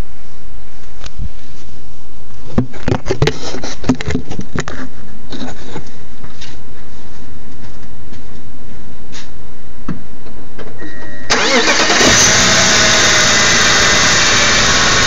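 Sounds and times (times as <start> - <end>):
car engine idling roughly: 11.4 - 15.0.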